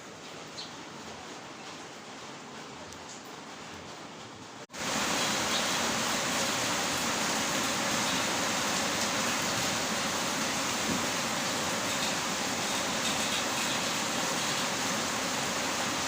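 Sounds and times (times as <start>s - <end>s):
heavy rain hissing: 4.5s - 16.0s.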